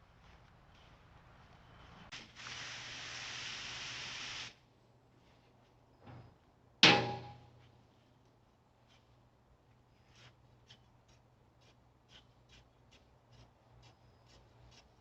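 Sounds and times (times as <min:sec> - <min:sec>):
steady hiss: 0:01.9 - 0:04.7
sharp ringing knock: 0:06.8 - 0:07.5.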